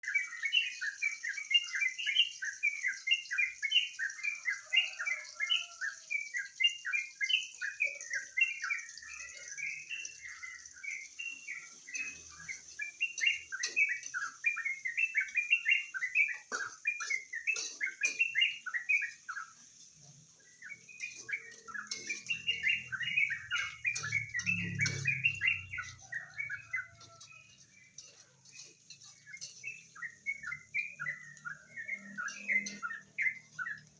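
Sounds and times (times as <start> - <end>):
bird singing chirping notes: 20.5 - 26.9, 29.3 - 33.9.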